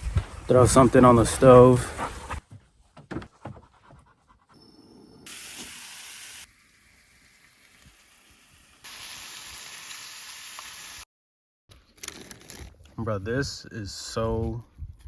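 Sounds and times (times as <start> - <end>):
food sizzling on stove: 5.3 - 11.1.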